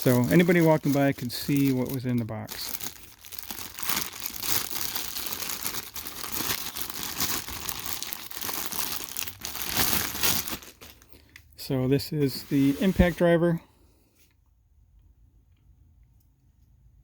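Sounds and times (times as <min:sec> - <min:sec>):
packaging crinkling: 0:00.0 - 0:11.4.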